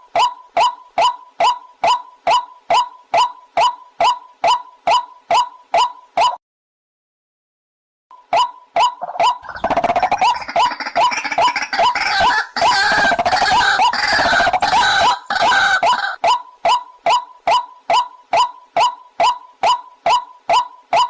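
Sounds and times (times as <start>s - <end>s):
waterhen calling: 8.8s - 21.0s
harsh croaking chorus: 9.0s - 16.2s.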